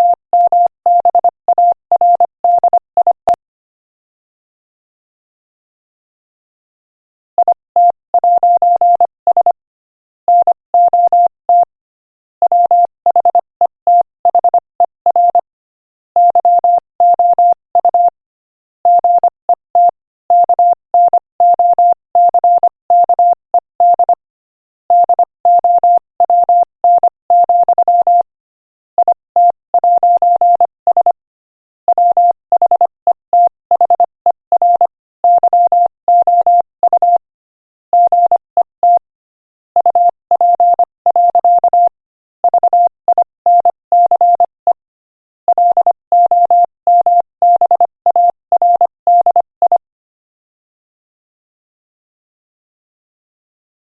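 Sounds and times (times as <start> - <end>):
morse code beeps: 0.0 - 3.3, 7.4 - 9.6, 10.3 - 11.7, 12.5 - 15.5, 16.2 - 18.2, 18.9 - 24.2, 24.9 - 28.3, 29.0 - 31.2, 31.9 - 37.2, 37.9 - 39.1, 39.8 - 44.8, 45.5 - 49.8.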